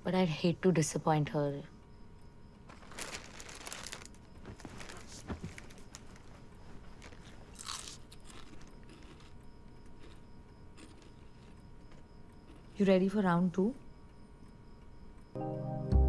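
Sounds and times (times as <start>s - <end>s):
crunching and crackling: 2.7s - 10.2s.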